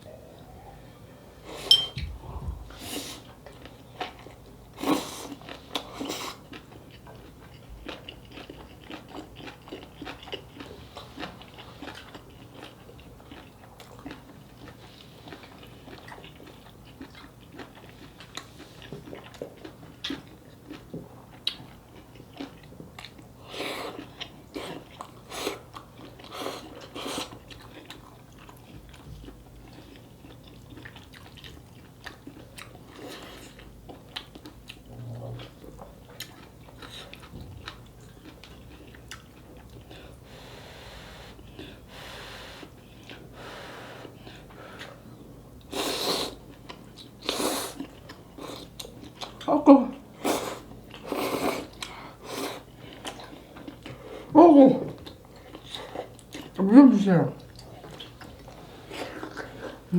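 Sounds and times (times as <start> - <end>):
person chewing and biting: 5.3 - 14.8, 15.4 - 23.2.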